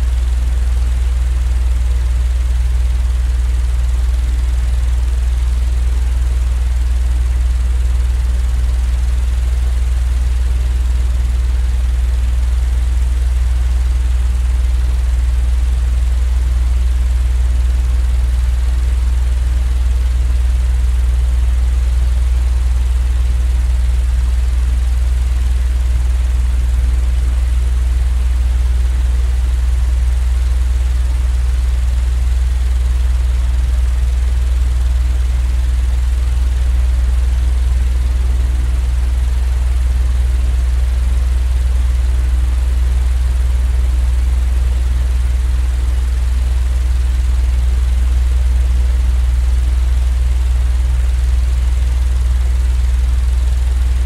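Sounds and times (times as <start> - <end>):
steady low machine hum: 0.0 - 15.5, 32.9 - 51.8, 52.4 - 54.0.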